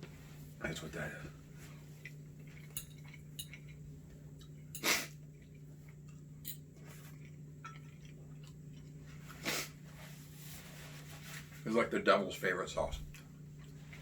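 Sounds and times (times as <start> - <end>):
steady low hum: 0.0 - 14.0
person sniffing: 9.4 - 9.8.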